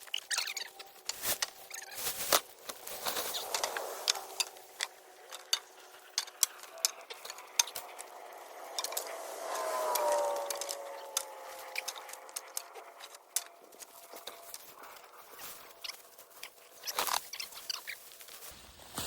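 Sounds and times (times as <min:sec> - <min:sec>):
branches rustling and scraping: 0:00.0 - 0:19.0.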